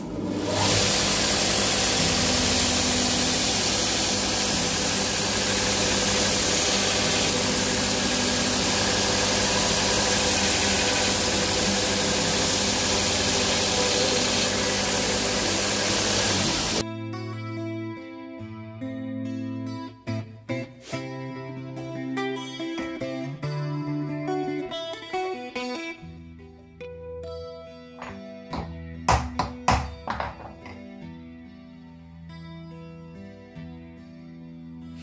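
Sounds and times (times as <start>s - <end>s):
sharpening machine hissing: 0.0s - 16.8s
acoustic guitar music: 16.8s - 29.7s.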